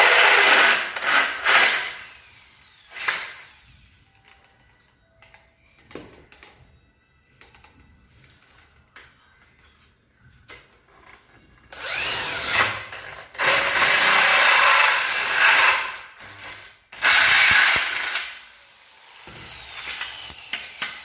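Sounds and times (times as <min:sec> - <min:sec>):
power drill boring wood: 0:00.0 - 0:03.9, 0:11.8 - 0:20.6.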